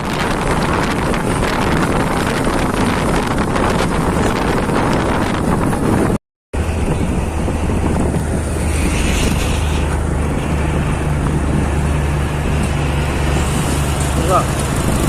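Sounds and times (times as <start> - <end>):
wind buffeting microphone: 0.0 - 15.0
truck diesel engine running: 6.6 - 15.0.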